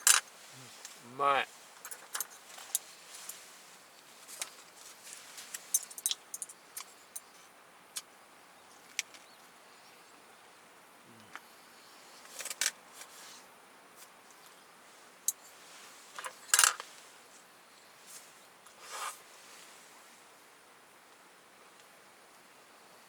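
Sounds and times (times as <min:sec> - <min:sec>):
utensils clinking on metal tableware: 0:05.6 - 0:07.3, 0:16.2 - 0:16.8.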